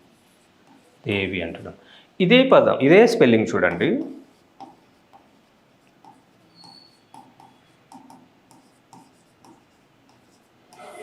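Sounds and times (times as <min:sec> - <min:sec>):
pen squeaking on paper: 0:06.0 - 0:11.0.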